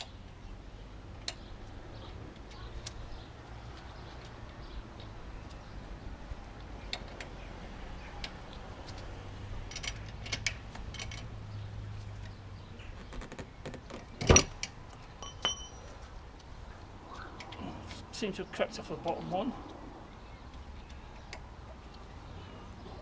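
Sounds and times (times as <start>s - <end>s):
metal tools clicking and knocking: 8.2s - 11.3s.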